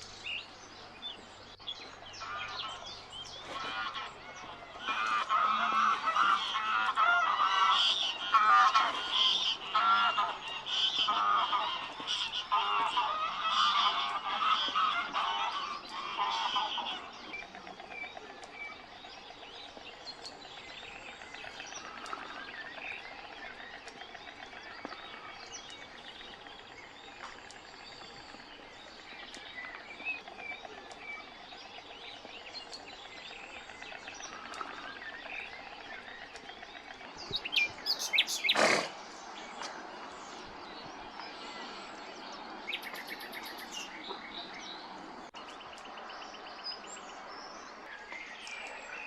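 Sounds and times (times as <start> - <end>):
small birds chirping: 0.0 - 49.0
geese honking: 2.2 - 17.2, 37.3 - 38.8.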